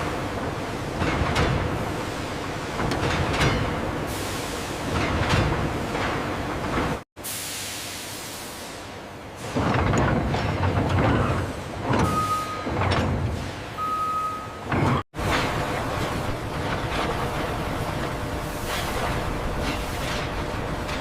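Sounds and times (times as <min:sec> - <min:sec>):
factory machinery noise: 0:00.0 - 0:21.0
short high beeps: 0:12.1 - 0:12.7, 0:13.8 - 0:14.7.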